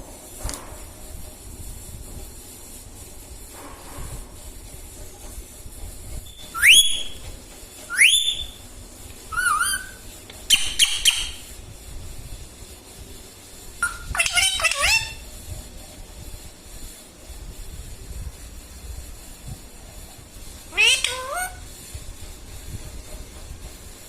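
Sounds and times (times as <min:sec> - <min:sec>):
parrot whistle-like calls: 0:06.3 - 0:07.2, 0:07.9 - 0:08.6, 0:09.3 - 0:11.5, 0:13.8 - 0:15.3, 0:20.7 - 0:21.6.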